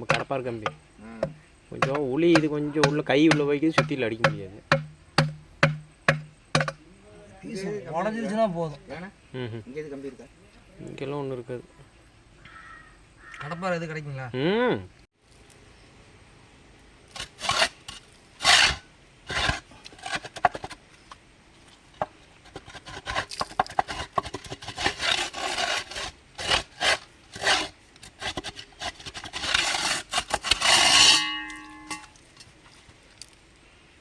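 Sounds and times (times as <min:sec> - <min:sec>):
crowbar scraping concrete: 0:17.1 - 0:20.8, 0:22.4 - 0:32.1
metallic ring: 0:30.8 - 0:32.2.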